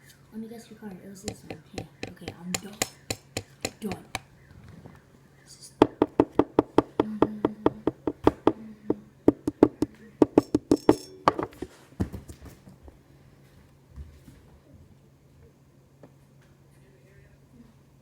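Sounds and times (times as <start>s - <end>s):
rapid sharp knocking: 1.3s - 4.3s, 5.8s - 11.6s.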